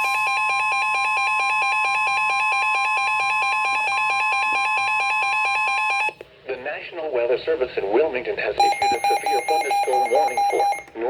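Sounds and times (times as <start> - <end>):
steady warning alarm tone: 0.0 - 6.2, 8.6 - 10.9
fast electronic beeping: 8.6 - 10.8.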